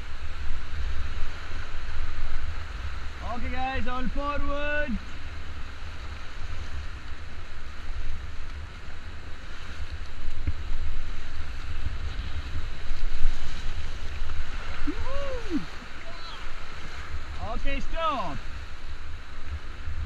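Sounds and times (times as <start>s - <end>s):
river water rushing and splashing: 0.0s - 20.0s
wind on microphone: 5.1s - 20.0s
person calling out: 14.9s - 16.5s.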